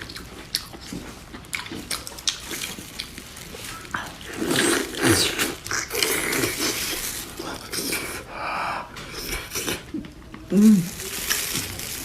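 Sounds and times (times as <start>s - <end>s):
person chewing wetly: 0.0s - 8.3s
person breathing: 8.2s - 9.0s.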